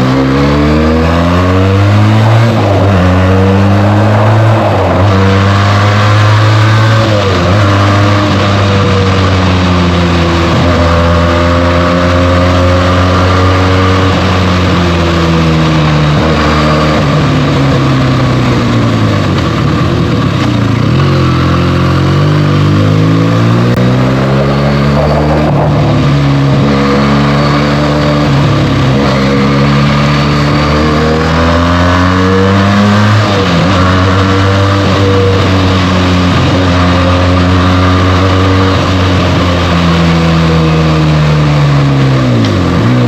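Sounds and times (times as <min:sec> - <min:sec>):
motorcycle engine on the road: 0:00.0 - 0:43.0.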